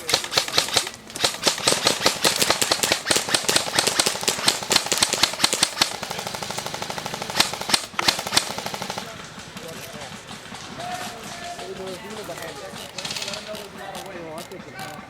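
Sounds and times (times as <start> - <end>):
airsoft single shots: 0.0 - 9.1
full-auto airsoft fire: 0.0 - 9.9
airsoft guns firing bursts: 0.0 - 15.0.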